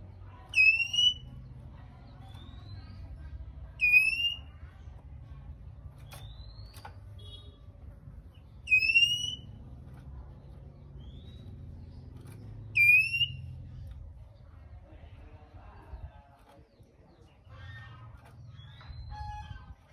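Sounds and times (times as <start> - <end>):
bird giving shrill rising calls: 0.6 - 1.3, 3.8 - 4.5, 8.6 - 9.6, 12.8 - 13.5.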